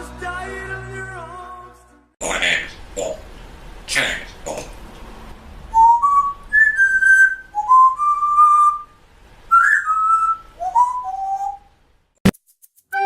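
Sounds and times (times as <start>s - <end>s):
person whistling a tune: 5.8s - 8.9s, 9.5s - 11.6s.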